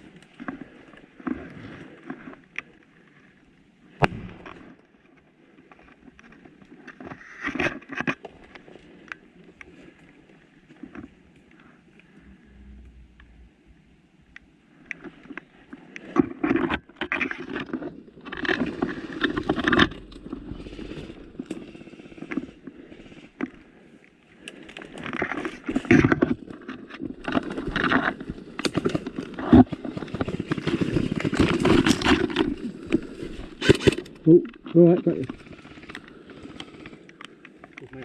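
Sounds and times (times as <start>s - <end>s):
twigs cracking: 4.0s - 5.0s, 14.9s - 23.7s, 24.4s - 38.0s
leaves and branches rustling: 14.7s - 38.0s.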